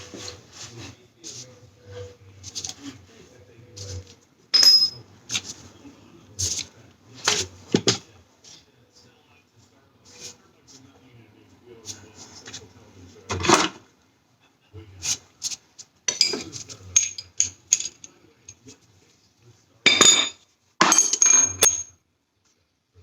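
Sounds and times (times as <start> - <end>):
metal car parts and tools clanking: 4.6 - 5.0, 16.1 - 18.1, 19.9 - 21.9.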